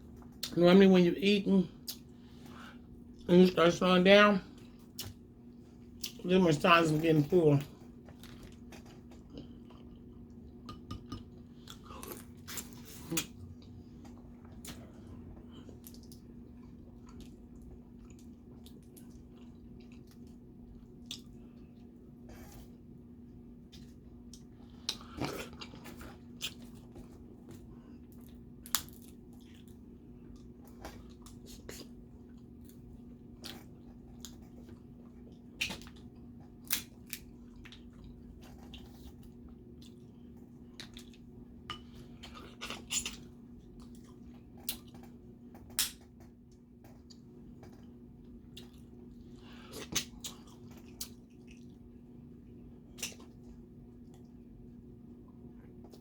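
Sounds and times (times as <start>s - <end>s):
chewing: 8.1s - 22.8s, 23.6s - 45.2s, 46.9s - 52.0s.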